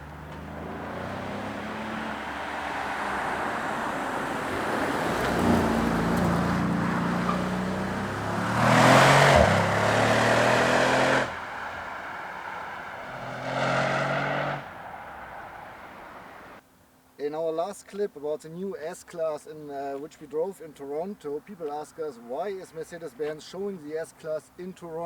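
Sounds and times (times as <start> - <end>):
car engine revving: 0.0 - 16.6.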